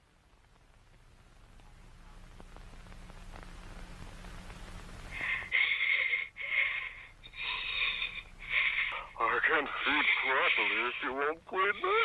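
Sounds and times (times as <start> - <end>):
low rumble and hiss: 0.0 - 12.0
distorted creature voice: 8.7 - 12.0.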